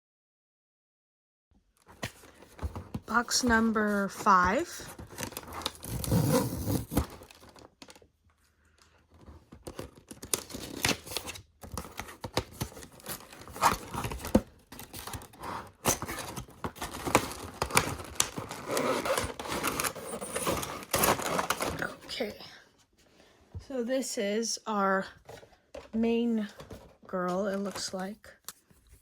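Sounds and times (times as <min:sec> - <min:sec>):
packaging tearing and crinkling: 0:05.0 - 0:08.0, 0:09.6 - 0:22.1.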